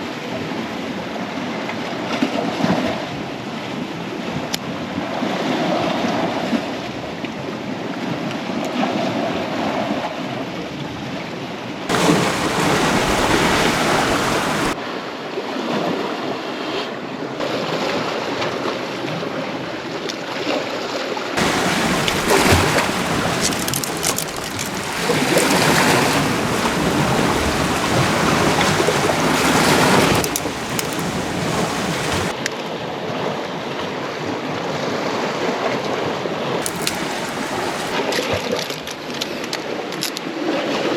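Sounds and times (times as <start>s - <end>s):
sea waves washing on shore: 11.9s - 14.8s, 21.4s - 32.4s, 36.6s - 38.2s
wind buffeting microphone: 11.9s - 14.8s, 21.4s - 32.3s, 36.6s - 38.0s.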